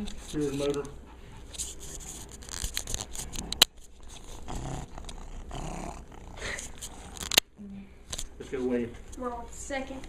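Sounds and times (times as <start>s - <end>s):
cat purring: 3.4s - 7.3s.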